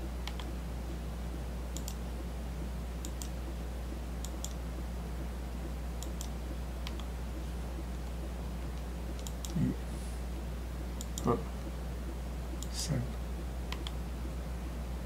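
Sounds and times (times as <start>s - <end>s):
low electrical hum: 0.0s - 15.0s.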